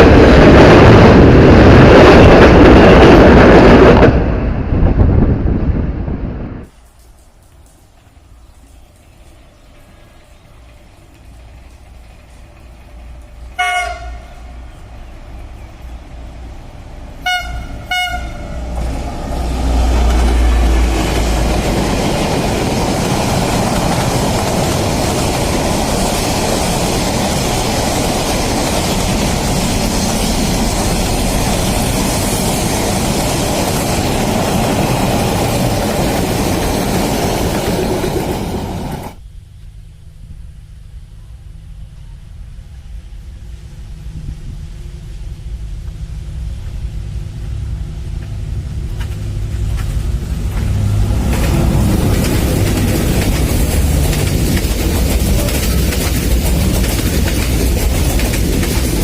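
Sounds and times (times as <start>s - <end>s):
train wheels rumbling on rails: 0.0s - 59.0s
train horn: 13.5s - 14.5s, 17.2s - 18.6s.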